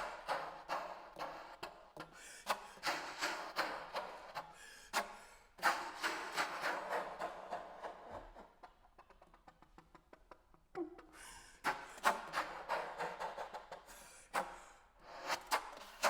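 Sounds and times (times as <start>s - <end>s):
breathy air through saxophone: 10.9s - 12.0s.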